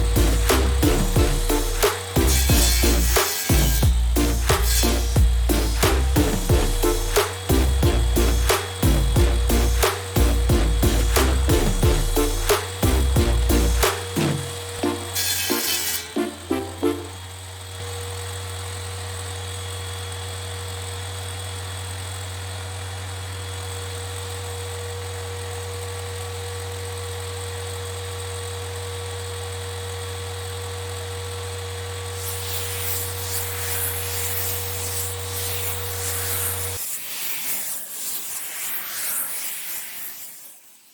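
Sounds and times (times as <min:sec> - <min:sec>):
hissing rasping noise: 0:00.0 - 0:17.1, 0:32.2 - 0:40.9
table saw motor humming: 0:00.0 - 0:17.2, 0:32.1 - 0:40.4.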